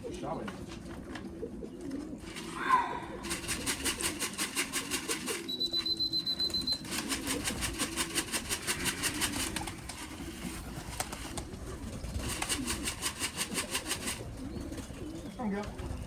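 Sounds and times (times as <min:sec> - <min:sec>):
pigeons cooing: 0:00.0 - 0:16.0
high steady beep: 0:05.5 - 0:06.9.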